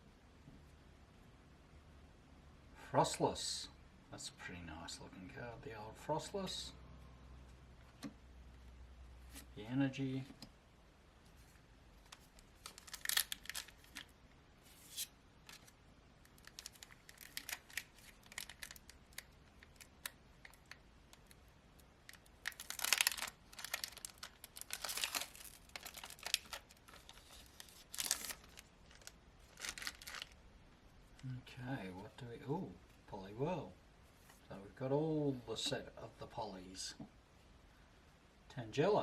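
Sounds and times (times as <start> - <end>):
foil wrapper tearing and crinkling: 12.1 - 14.1, 16.4 - 21.3, 22.1 - 30.4.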